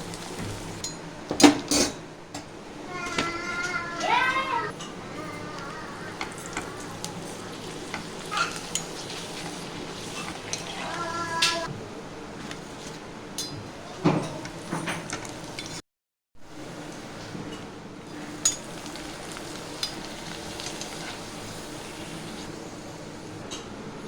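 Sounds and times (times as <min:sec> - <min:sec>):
frying in hot oil sizzle: 0:00.0 - 0:00.9, 0:04.9 - 0:11.7, 0:12.4 - 0:15.8, 0:16.5 - 0:23.6.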